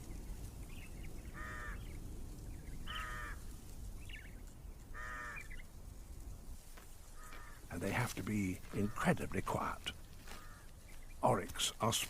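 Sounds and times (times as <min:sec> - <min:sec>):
bird calling: 0:00.7 - 0:02.0, 0:02.8 - 0:03.4, 0:04.0 - 0:05.7, 0:07.2 - 0:11.9.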